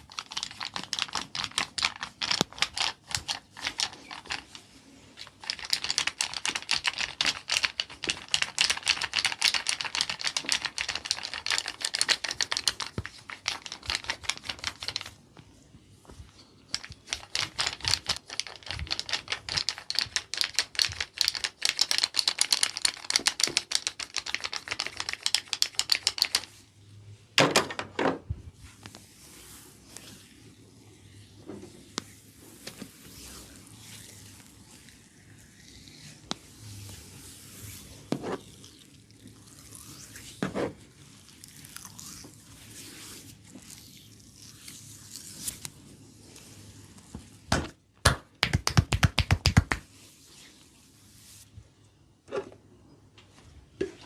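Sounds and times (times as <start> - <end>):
percussive massager tapping: 47.5 - 49.8.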